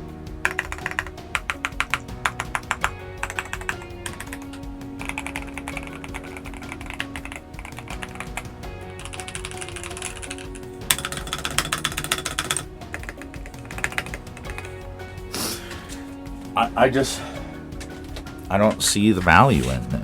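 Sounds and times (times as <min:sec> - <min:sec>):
background music: 0:00.0 - 0:20.0
mechanical keyboard typing: 0:00.4 - 0:08.4, 0:09.0 - 0:14.7.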